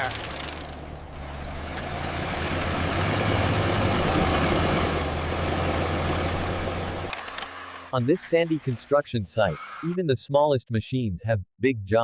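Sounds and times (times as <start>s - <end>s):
engine rumble: 0.0s - 8.2s.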